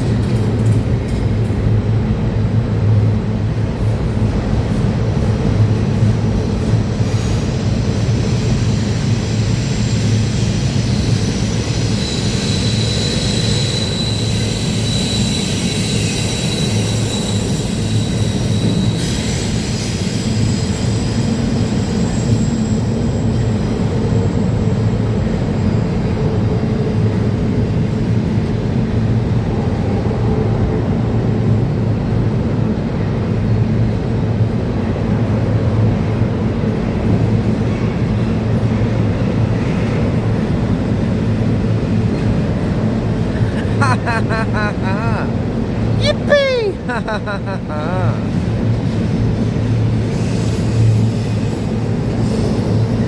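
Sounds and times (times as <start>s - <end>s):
freight train rumbling on rails: 0.0s - 43.8s, 48.2s - 53.0s
high wheel squeal: 10.8s - 19.9s.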